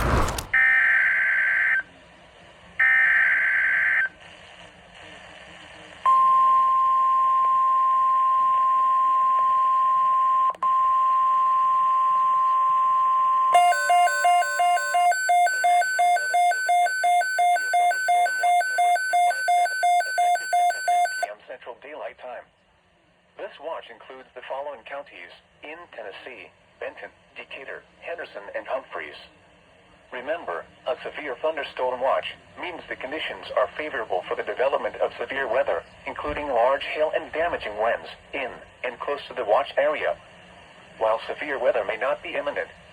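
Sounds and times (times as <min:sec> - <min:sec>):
steady warning alarm tone: 0:09.6 - 0:21.3
weather radio rapid beeping: 0:10.6 - 0:21.3.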